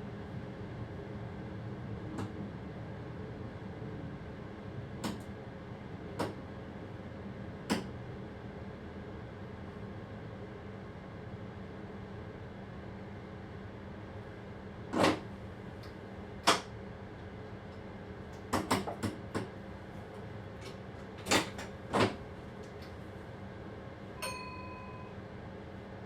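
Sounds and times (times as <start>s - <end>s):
train running hum: 0.0s - 26.0s
short electronic beep: 24.2s - 25.2s.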